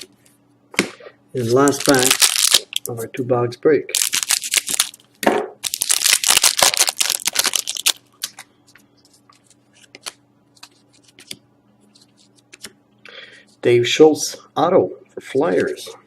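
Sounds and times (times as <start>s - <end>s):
foil wrapper tearing and crinkling: 1.4s - 2.9s, 3.9s - 5.0s, 5.6s - 8.3s.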